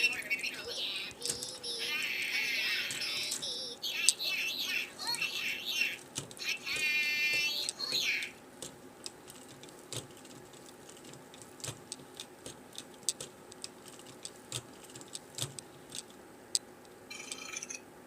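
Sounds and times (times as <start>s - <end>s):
light clicks and taps: 6.1s - 17.0s.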